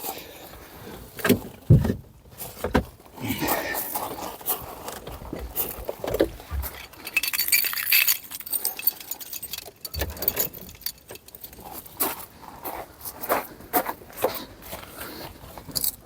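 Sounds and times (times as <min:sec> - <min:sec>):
dull thumps: 0:01.2 - 0:03.0
metallic jangling and clinking: 0:06.6 - 0:12.2, 0:15.7 - 0:16.0.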